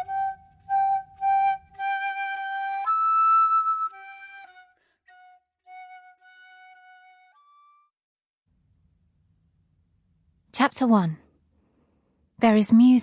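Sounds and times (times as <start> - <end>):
solo flute melody: 0.0 - 7.9.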